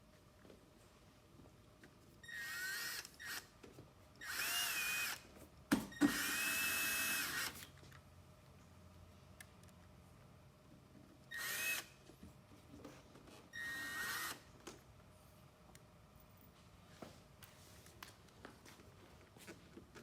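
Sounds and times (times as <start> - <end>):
power drill motor whine: 2.2 - 3.5, 4.2 - 5.3, 5.9 - 7.6, 11.3 - 12.0, 13.5 - 14.5.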